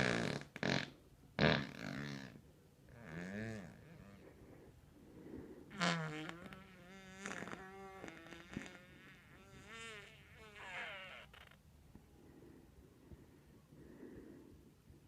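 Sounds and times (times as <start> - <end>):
comic fart sounds: 0.0 - 2.4, 3.0 - 4.2, 5.7 - 11.6.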